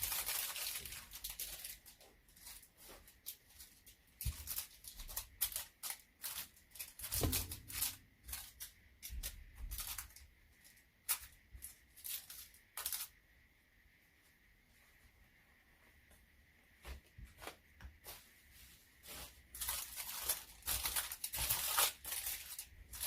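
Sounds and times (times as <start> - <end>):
parcel packaging crinkling: 0.0 - 13.2, 19.1 - 23.0.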